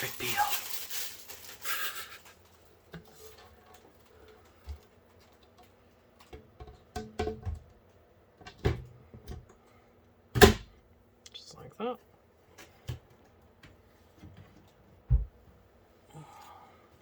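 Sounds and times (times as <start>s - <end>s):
plastic film crinkling: 0.0s - 6.3s.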